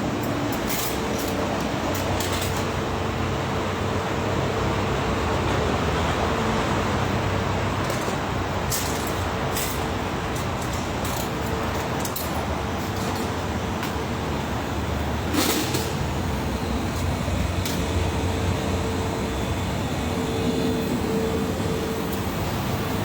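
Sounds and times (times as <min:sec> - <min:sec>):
machine whirring and hissing: 0:00.0 - 0:23.0
thin hum-like tone: 0:16.2 - 0:23.0.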